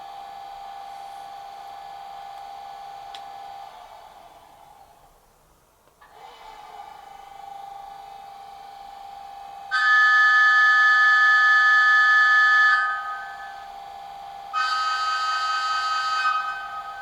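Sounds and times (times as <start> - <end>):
locomotive horn blasts from speaker: 9.7 - 13.6, 14.6 - 17.0.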